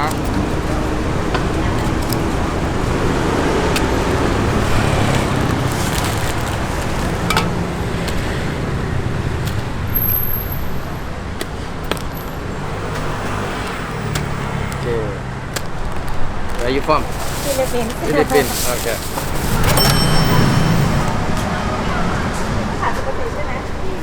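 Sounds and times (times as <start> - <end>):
handling clicks and clatter: 0.0 - 10.0, 12.9 - 21.4
road traffic: 0.0 - 24.0.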